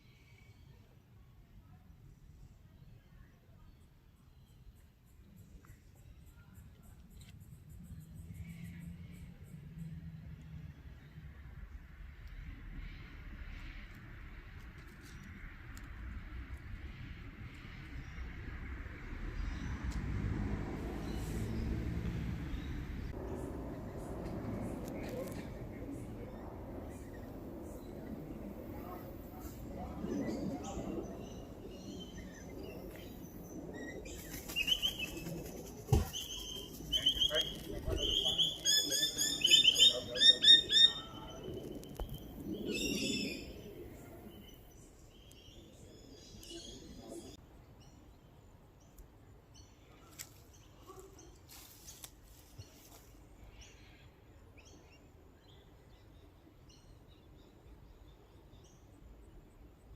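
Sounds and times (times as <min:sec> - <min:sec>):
low outdoor rumble: 0:06.9 - 0:47.4
birds chirping: 0:20.8 - 0:47.4.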